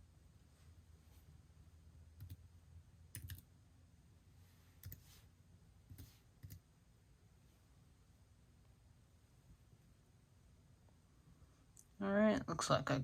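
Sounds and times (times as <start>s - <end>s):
computer mouse clicks: 3.2s - 3.5s, 4.8s - 5.1s.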